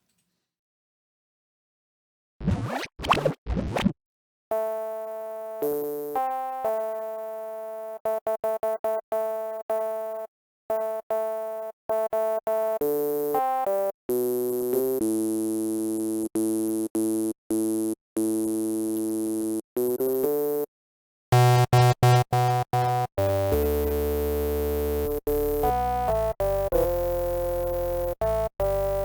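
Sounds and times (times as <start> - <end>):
synthesizer notes: 21.4 - 25.2.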